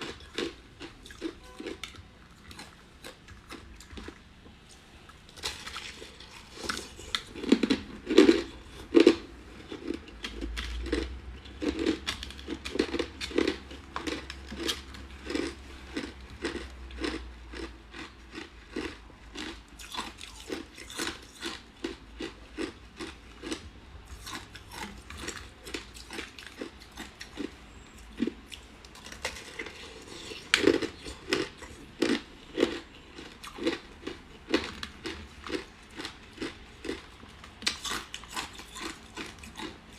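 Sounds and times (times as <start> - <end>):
person crunching ice: 29.0 - 37.0.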